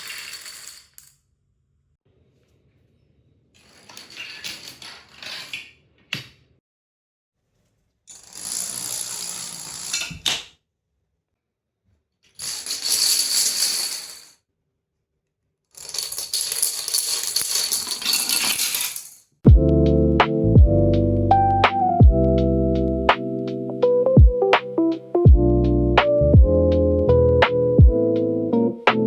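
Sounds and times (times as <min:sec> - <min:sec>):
plastic dominoes toppling: 0:12.4 - 0:14.3, 0:15.8 - 0:19.2.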